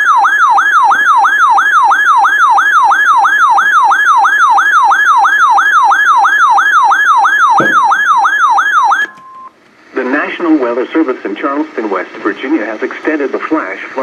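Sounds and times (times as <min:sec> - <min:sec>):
electronic warbling siren alert: 0:07.0 - 0:09.2.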